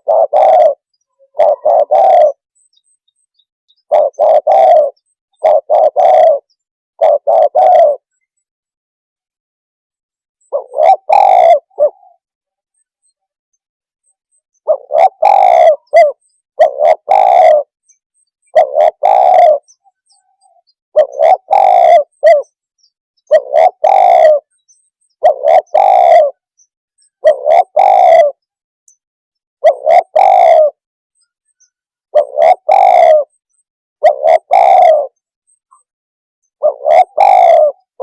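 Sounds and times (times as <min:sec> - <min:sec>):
dove cooing: 0:00.0 - 0:02.5, 0:03.8 - 0:08.2, 0:10.4 - 0:12.3, 0:14.6 - 0:17.8, 0:18.4 - 0:22.6, 0:23.3 - 0:26.5, 0:27.2 - 0:28.4, 0:29.6 - 0:30.8, 0:32.1 - 0:33.4, 0:34.0 - 0:35.2, 0:36.5 - 0:38.0.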